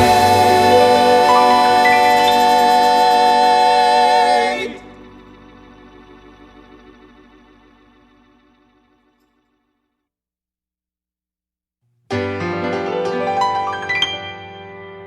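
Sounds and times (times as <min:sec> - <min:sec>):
male quartet singing chord: 0:00.0 - 0:05.8
organ chord: 0:00.0 - 0:09.7.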